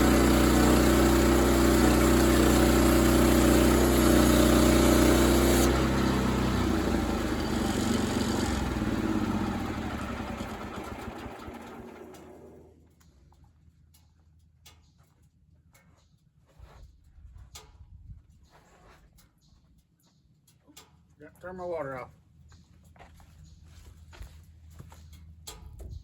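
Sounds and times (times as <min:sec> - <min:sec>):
sawmill engine running and winding down: 0:00.0 - 0:12.8.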